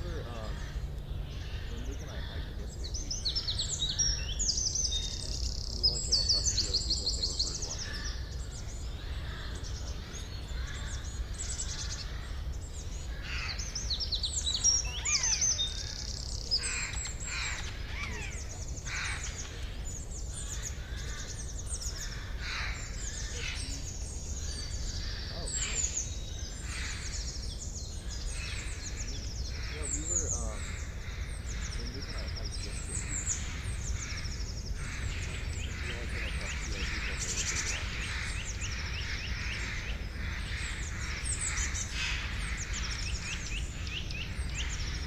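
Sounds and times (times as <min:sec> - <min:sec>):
birds chirping and singing: 0:00.0 - 0:45.0.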